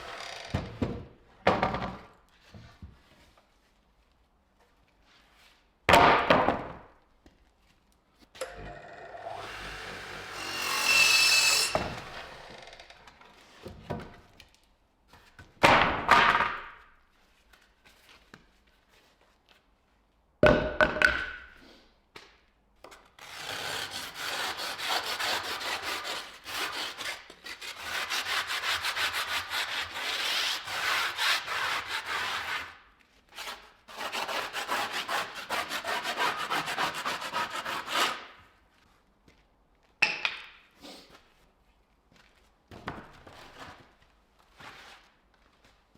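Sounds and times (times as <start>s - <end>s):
hand tool rasping wood: 10.3s - 12.6s, 33.4s - 38.2s.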